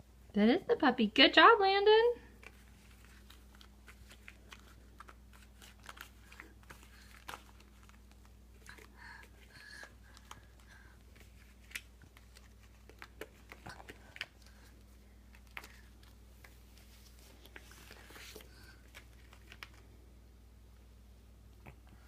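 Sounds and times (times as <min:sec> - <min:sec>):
clicks and rustles of small objects: 0:02.3 - 0:20.0.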